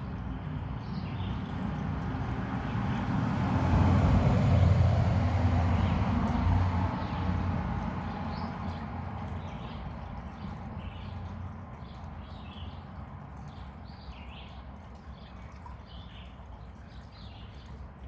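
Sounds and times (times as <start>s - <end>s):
vehicle passing by: 0.0s - 11.6s.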